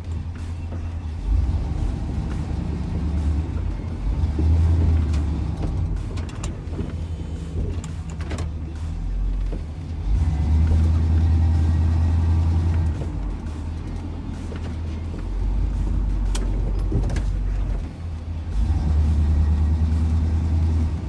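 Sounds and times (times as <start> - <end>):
truck engine drone: 0.0 - 21.0
sharp clicks and knocks: 4.4 - 9.7, 12.6 - 18.1.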